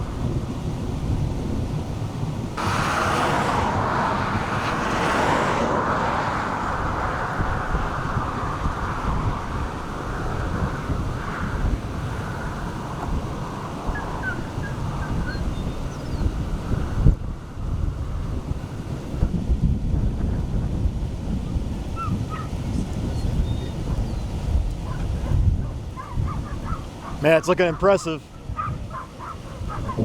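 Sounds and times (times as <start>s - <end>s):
wind buffeting microphone: 0.0s - 30.0s
rushing hiss: 2.6s - 5.6s.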